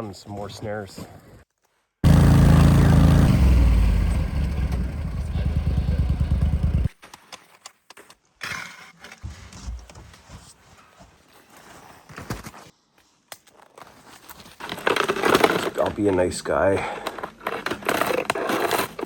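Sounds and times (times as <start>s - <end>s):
vehicle engine running: 2.0s - 6.9s.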